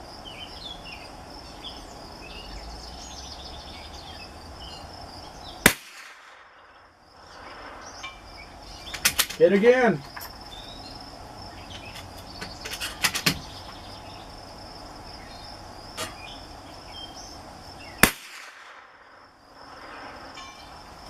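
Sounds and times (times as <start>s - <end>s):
insects chirring: 0.0s - 21.0s
rifle shot crack: 5.6s - 6.6s, 18.0s - 19.2s.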